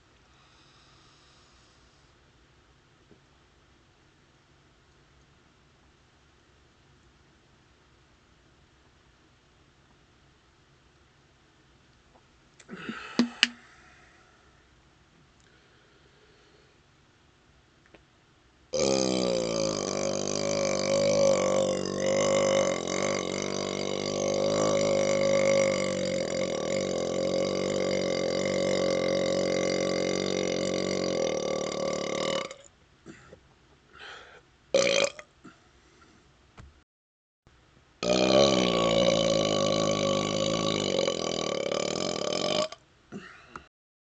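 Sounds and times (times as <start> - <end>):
man belching: 12.6 - 13.6, 18.8 - 32.7, 34.8 - 35.3, 38.0 - 43.4.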